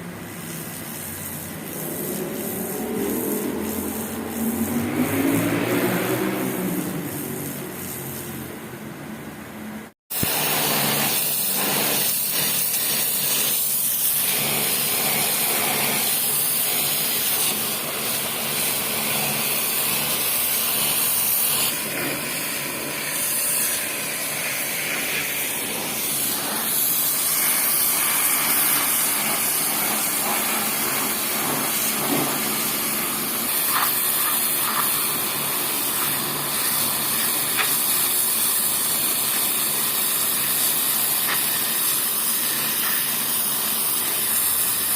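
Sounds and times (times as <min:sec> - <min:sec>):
pressure washer jet hissing: 0:00.0 - 0:08.7, 0:09.6 - 0:44.9
machine humming: 0:01.4 - 0:08.5.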